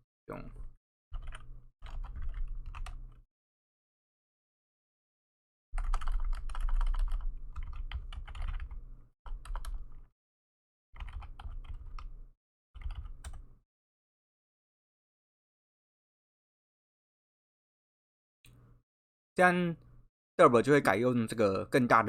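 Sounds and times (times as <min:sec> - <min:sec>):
computer keyboard typing: 0:01.2 - 0:03.2, 0:05.8 - 0:10.0, 0:11.0 - 0:12.1, 0:12.8 - 0:13.4.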